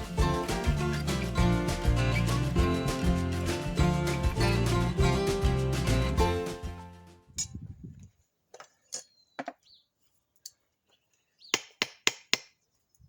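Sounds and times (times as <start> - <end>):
music: 0.0 - 7.3.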